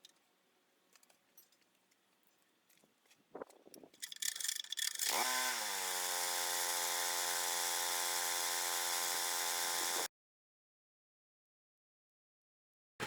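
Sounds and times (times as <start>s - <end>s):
power tool motor running: 4.9s - 10.1s.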